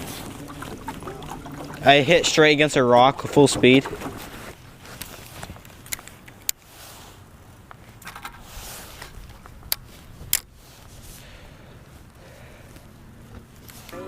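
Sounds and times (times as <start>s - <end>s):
faint steady background noise: 0.0s - 14.0s.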